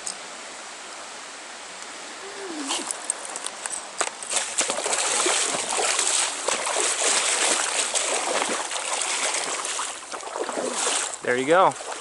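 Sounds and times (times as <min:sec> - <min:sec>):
stream rushing: 0:00.0 - 0:12.0
water splashing in a stream: 0:02.5 - 0:12.0.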